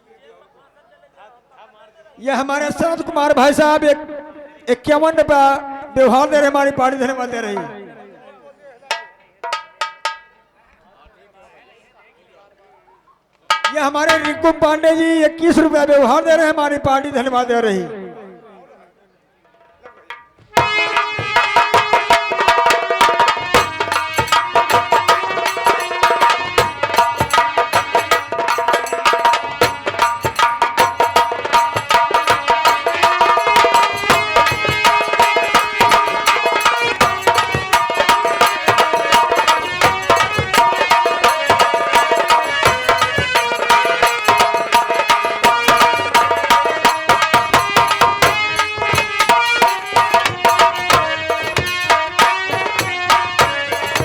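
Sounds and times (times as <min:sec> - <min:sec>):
fast hand drumming: 0:13.5 - 0:14.6, 0:20.1 - 0:54.0
held melody line: 0:20.5 - 0:54.0.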